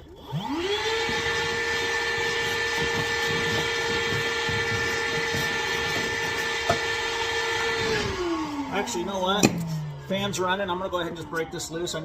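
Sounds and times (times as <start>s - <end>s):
electric motor high-pitched whine: 0.0s - 10.4s.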